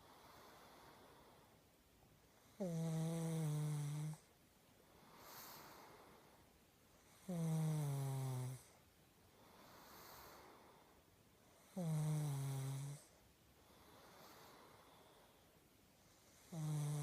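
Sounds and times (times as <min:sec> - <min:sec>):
soft breathing: 0:00.0 - 0:02.8, 0:03.8 - 0:07.4, 0:08.5 - 0:11.9, 0:12.8 - 0:17.0
dog snoring loudly: 0:02.6 - 0:04.2, 0:07.2 - 0:08.7, 0:11.6 - 0:13.1, 0:16.4 - 0:17.0.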